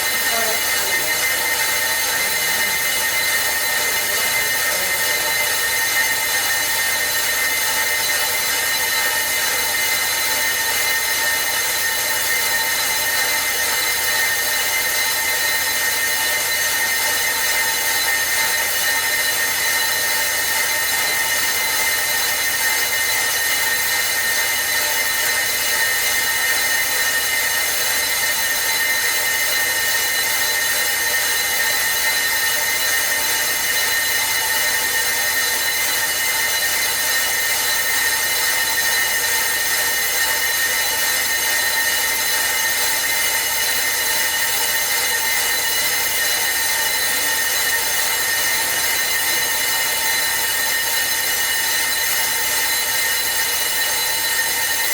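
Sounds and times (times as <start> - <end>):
high metallic tones: 0.0 - 11.1, 30.9 - 54.8
lathe cutting metal: 0.0 - 54.9.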